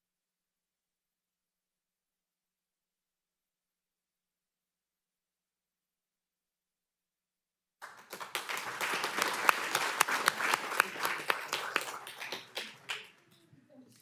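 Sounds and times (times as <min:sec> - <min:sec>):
audience applauding: 0:07.8 - 0:13.5.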